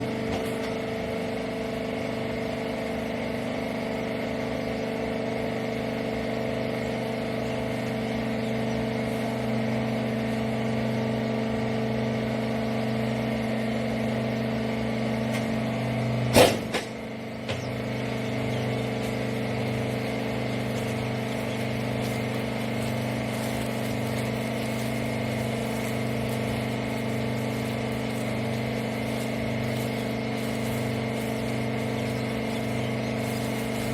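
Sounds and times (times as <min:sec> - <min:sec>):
baling press humming: 0:13.3 - 0:33.9.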